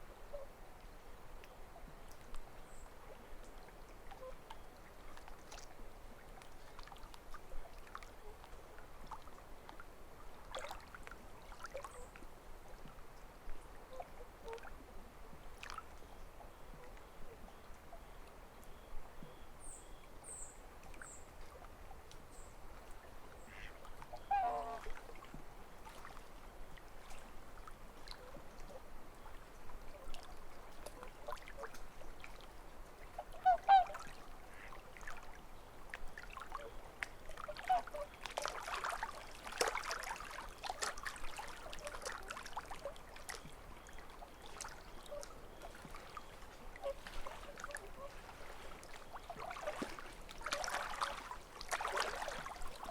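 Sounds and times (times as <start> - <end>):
ripples lapping at shore: 1.4 - 18.1, 18.7 - 52.9
waterfowl honking: 23.4 - 25.0, 33.1 - 34.8, 37.4 - 40.0, 44.5 - 52.4.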